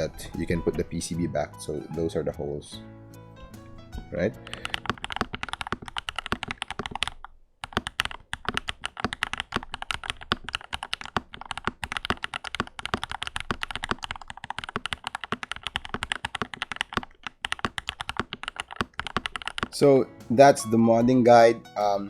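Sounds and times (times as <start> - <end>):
fast mechanical keyboard typing: 4.4 - 19.8.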